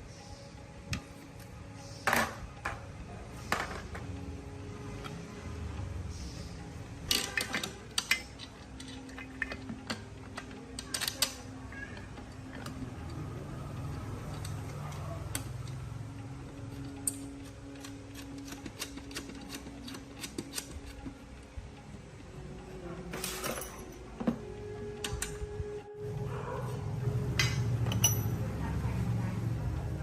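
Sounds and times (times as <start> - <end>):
clicks of hard parts handled: 7.1 - 13.2.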